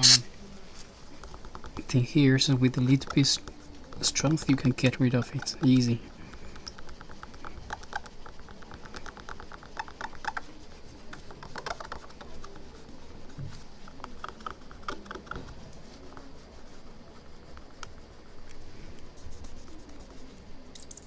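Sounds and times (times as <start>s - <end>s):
glue scraping off a screen: 0.0s - 0.2s.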